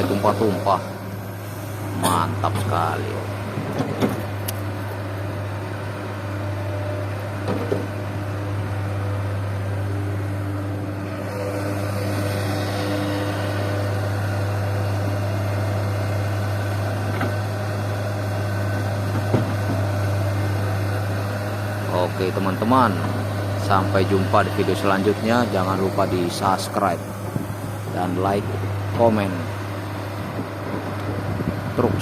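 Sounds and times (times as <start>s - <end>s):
diesel engine idling: 0.0s - 32.0s
faint engine knocks: 19.0s - 20.0s.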